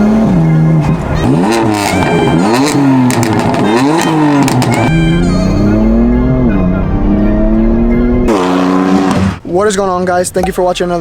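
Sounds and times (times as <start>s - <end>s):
car engine revving: 0.0s - 9.5s
exhaust pops: 1.5s - 4.9s.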